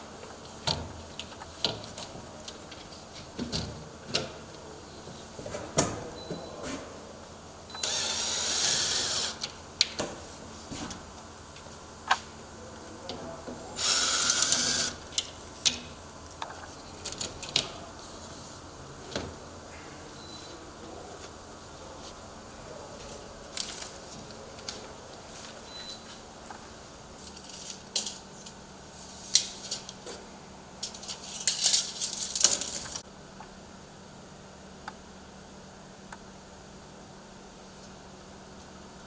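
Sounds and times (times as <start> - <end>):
short whirring rasping bursts: 7.8 - 9.5, 13.8 - 15.0.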